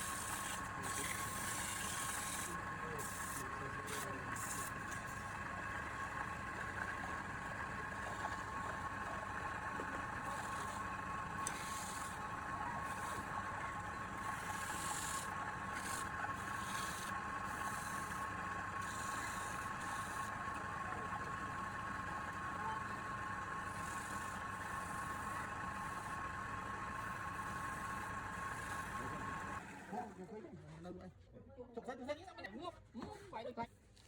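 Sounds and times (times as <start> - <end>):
tool scraping spinning wood: 0.0 - 29.6
wood lathe motor whine: 0.0 - 29.9.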